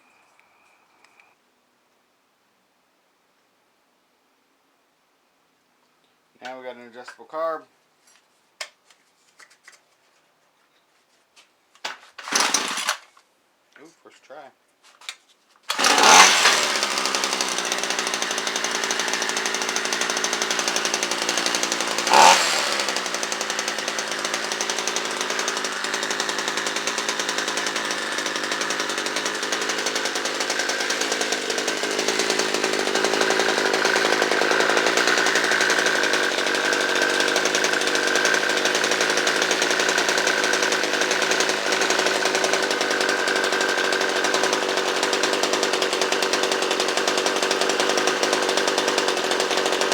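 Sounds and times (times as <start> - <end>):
string trimmer engine running: 12.2 - 13.0, 15.7 - 49.9.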